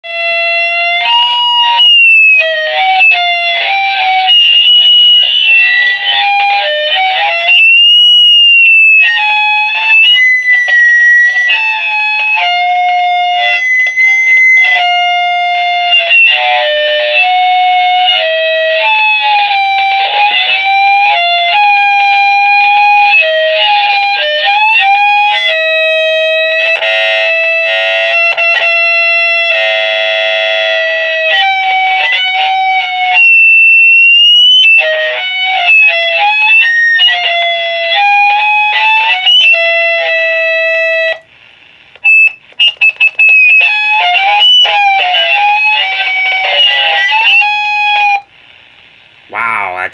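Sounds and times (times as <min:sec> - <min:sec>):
shrill instrumental melody: 0:00.1 - 0:22.4, 0:42.0 - 0:48.3.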